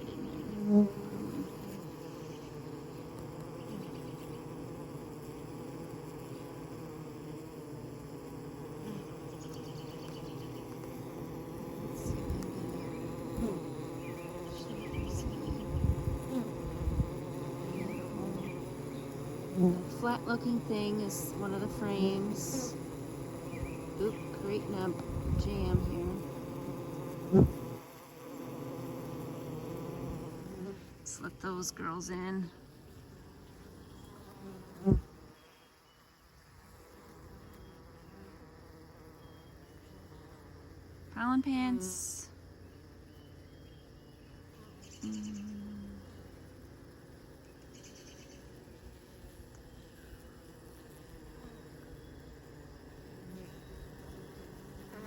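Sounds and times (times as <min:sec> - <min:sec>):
bees buzzing: 0:00.0 - 0:55.0.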